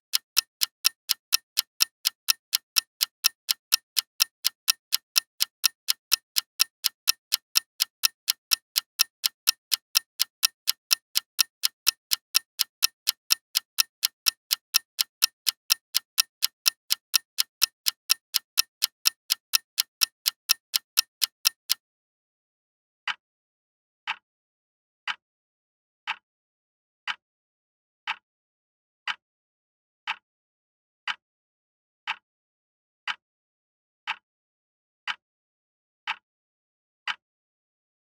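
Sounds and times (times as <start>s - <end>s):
clock ticking: 0.0s - 21.8s.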